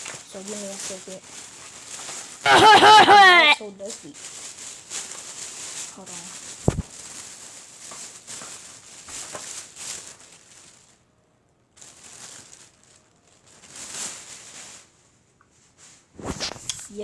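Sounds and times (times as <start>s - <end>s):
rustling and handling noises: 0.0s - 17.0s.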